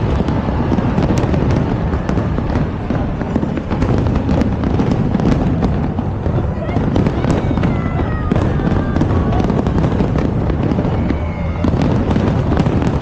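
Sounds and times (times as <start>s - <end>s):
fireworks cracks and crackles: 0.0s - 13.0s
fireworks rumble: 0.0s - 13.0s.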